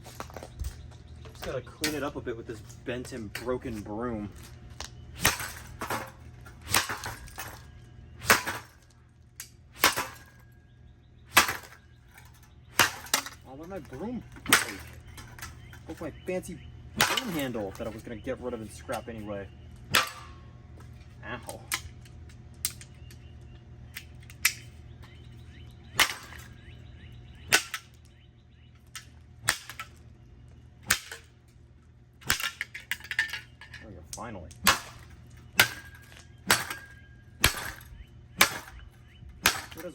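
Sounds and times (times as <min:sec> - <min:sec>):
broom handle hitting fan housing: 0:17.0 - 0:18.2.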